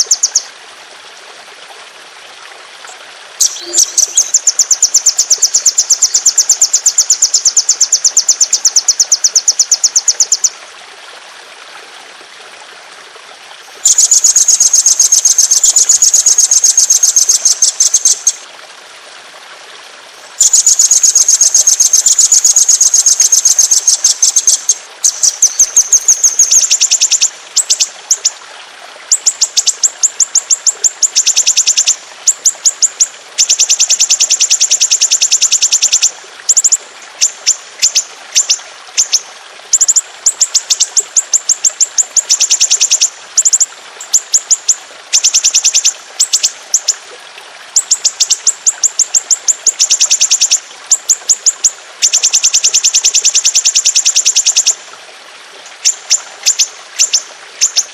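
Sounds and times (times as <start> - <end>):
songbird singing rapid trills: 3.4 - 10.6, 13.8 - 18.4, 20.4 - 28.3, 29.1 - 39.2, 39.8 - 47.0, 47.8 - 54.8.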